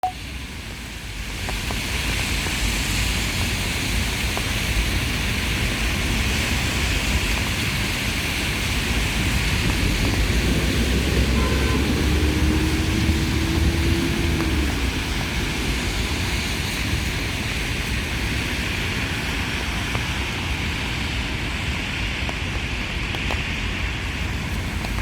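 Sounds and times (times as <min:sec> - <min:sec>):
tires hissing on wet road: 0:00.2 - 0:25.0
vehicle traffic noise: 0:06.1 - 0:19.7
deep rumble: 0:08.6 - 0:17.1.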